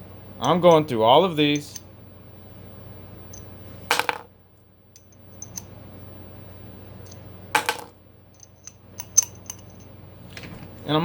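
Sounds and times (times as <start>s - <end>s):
metal cartridges clinking: 1.5s - 1.9s, 3.3s - 4.3s, 5.0s - 5.7s, 7.0s - 10.0s.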